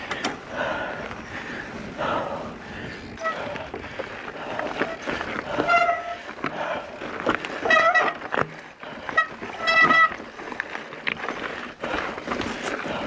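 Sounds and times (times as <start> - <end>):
rustling and clicks: 3.2 - 13.0.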